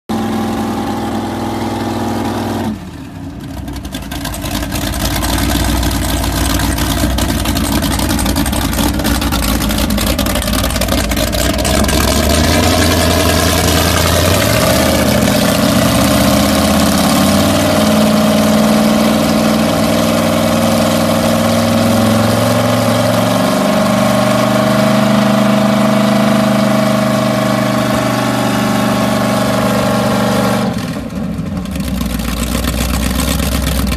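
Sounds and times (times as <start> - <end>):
boat engines running: 3.4 - 22.3, 31.4 - 33.9.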